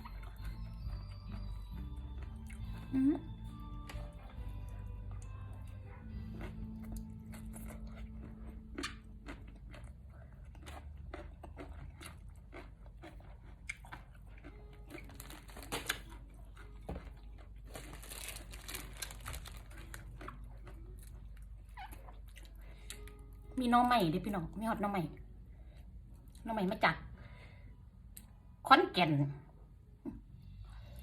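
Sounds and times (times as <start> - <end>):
person chewing and crunching: 0.0 - 23.3.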